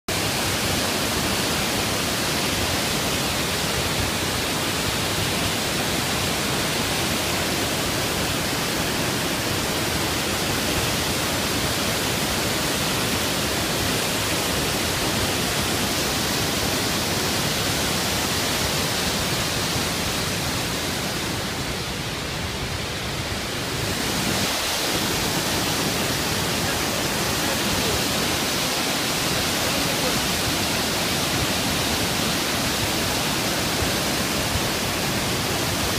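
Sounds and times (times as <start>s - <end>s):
waterfall rushing: 0.1s - 35.9s.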